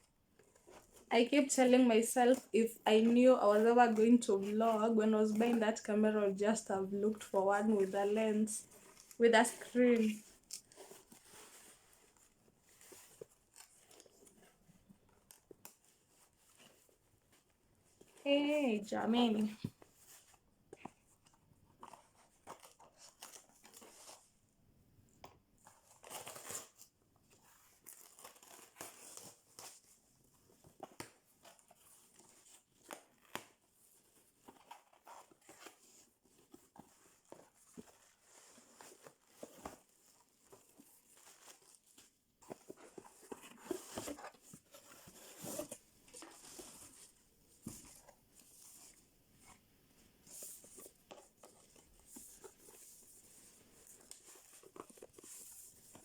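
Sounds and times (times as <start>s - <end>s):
packaging rustling and tearing: 25.6s - 47.2s.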